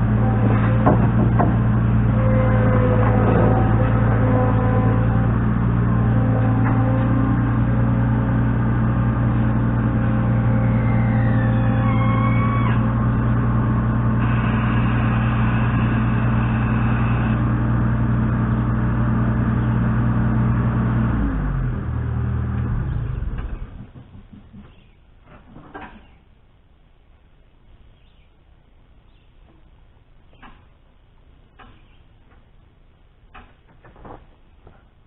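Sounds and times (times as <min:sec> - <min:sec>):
engine running under load: 0:00.0 - 0:25.9.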